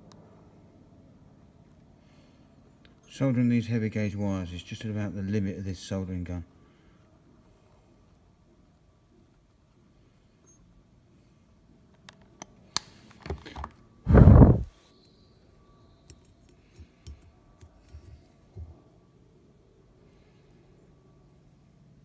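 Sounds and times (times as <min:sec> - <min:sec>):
short loud burst of noise: 0:14.1 - 0:14.7
tools and wire clicking: 0:16.0 - 0:18.7.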